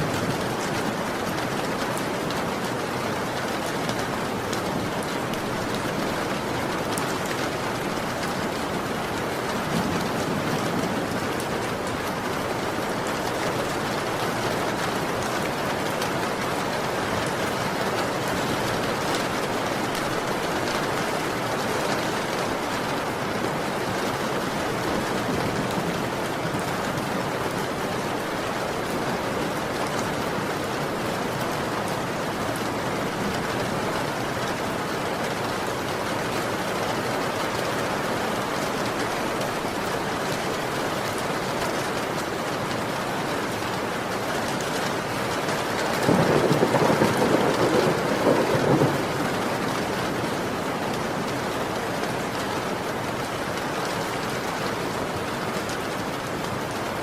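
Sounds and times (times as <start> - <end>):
heavy rain: 0.0 - 57.0
thunder rumble: 46.0 - 50.2.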